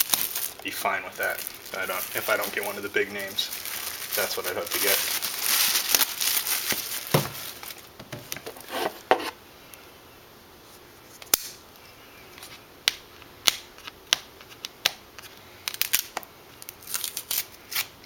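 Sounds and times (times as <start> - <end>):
packaging crinkling and rustling: 0.0 - 9.1, 15.2 - 17.9.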